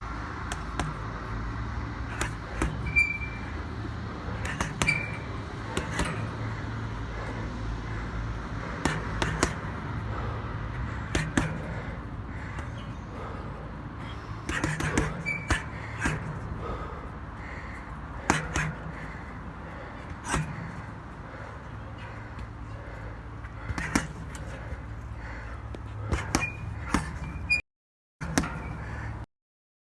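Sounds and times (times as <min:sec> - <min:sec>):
traffic rumble: 0:00.0 - 0:27.6, 0:28.2 - 0:29.3
high squeaks: 0:02.1 - 0:03.7, 0:04.3 - 0:06.5, 0:14.0 - 0:16.4.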